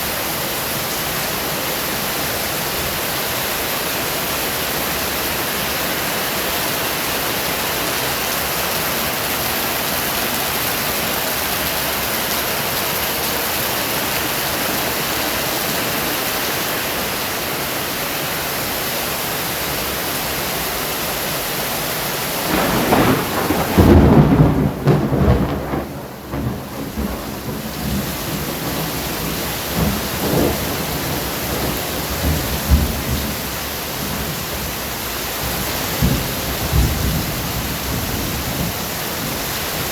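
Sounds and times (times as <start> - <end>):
rain hissing: 0.0 - 39.9
thunder clap and rumble: 22.4 - 34.6, 35.4 - 39.4.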